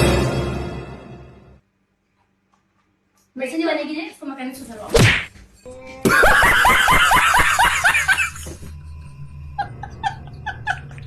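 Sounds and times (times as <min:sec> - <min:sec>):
steady low hum: 0:05.2 - 0:11.0
person laughing: 0:06.0 - 0:08.7, 0:09.6 - 0:11.0.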